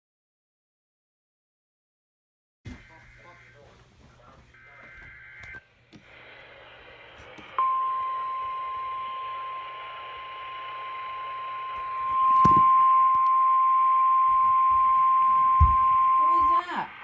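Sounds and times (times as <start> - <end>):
radio static hiss: 2.7 - 17.0
steady high alarm tone: 7.6 - 17.0.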